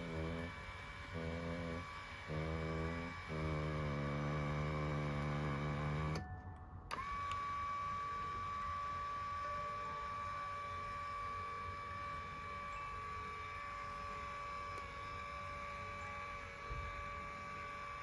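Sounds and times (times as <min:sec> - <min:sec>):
high-pitched whine: 0:00.0 - 0:06.2
motor low buzzing drone: 0:00.0 - 0:06.3, 0:06.9 - 0:18.0.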